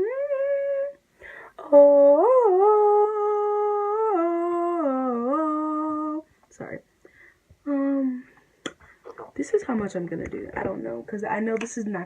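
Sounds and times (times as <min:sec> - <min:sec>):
voice holding long notes: 0:07.7 - 0:08.3.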